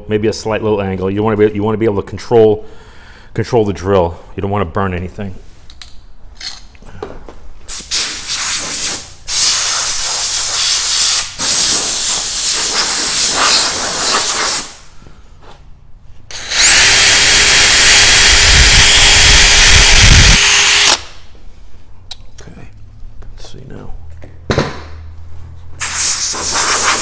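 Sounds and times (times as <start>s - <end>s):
drill whining: 16.3s - 21.1s.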